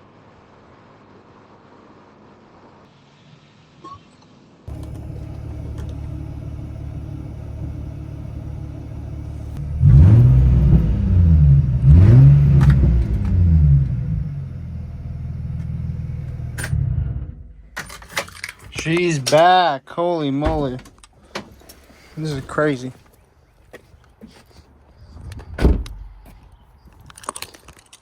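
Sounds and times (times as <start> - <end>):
car engine idling and revving: 4.7 - 17.8.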